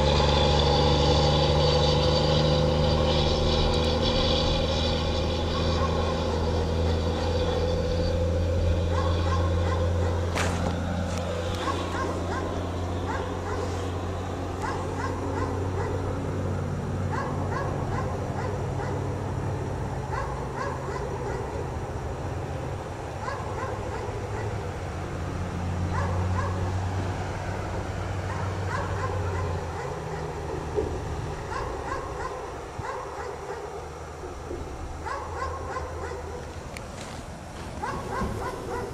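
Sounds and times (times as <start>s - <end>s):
dog barking: 5.4s - 16.4s, 17.0s - 19.2s, 20.0s - 21.8s, 23.2s - 24.8s, 25.9s - 26.8s, 28.2s - 34.0s, 35.0s - 36.5s, 37.8s - 38.9s.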